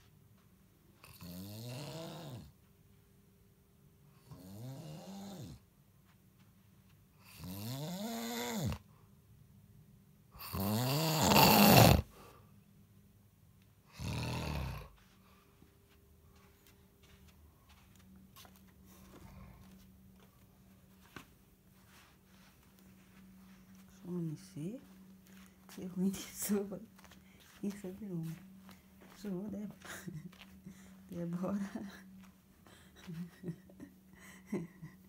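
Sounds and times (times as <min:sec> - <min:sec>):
man snoring loudly: 0:01.1 - 0:02.5, 0:04.3 - 0:05.6, 0:07.3 - 0:08.8, 0:10.4 - 0:12.1, 0:13.9 - 0:14.9.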